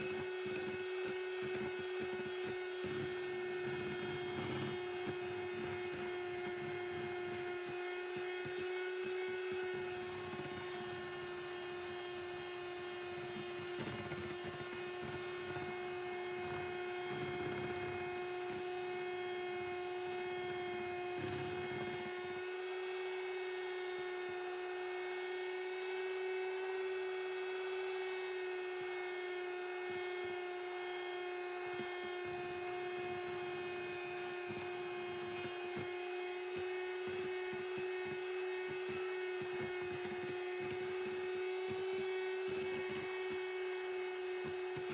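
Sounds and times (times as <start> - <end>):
beaters scraping bowl: 0.0 - 11.4, 13.0 - 18.7, 31.8 - 44.9
electric hand mixer whine: 0.0 - 44.9.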